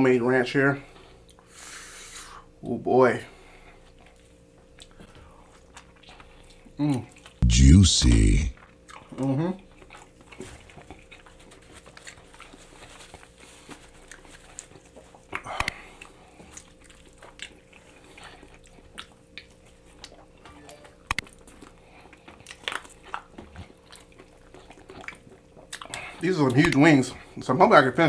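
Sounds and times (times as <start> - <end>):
wet chewing: 22.4 - 26.1.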